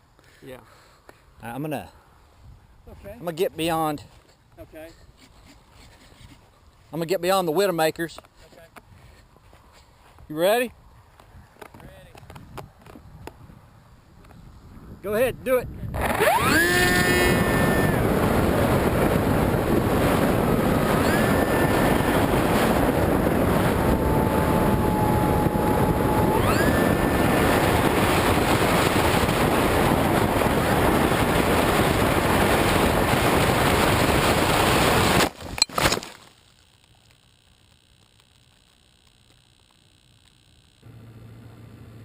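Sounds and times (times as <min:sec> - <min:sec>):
wind rush: 0:12.3 - 0:35.3
electric motor propeller whining: 0:16.0 - 0:35.2, 0:37.0 - 0:42.0.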